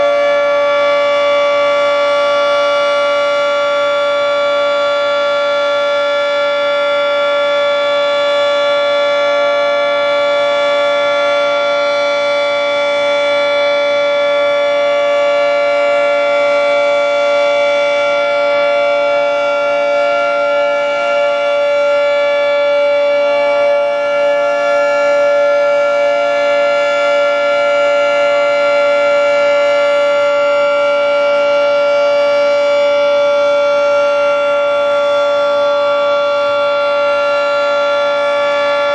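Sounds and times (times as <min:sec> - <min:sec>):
warning siren steady chord: 0:00.0 - 0:38.9.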